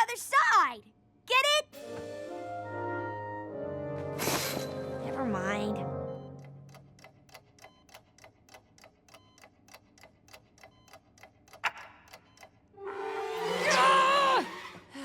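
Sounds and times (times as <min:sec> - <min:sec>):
clock ticking: 0:06.2 - 0:12.7.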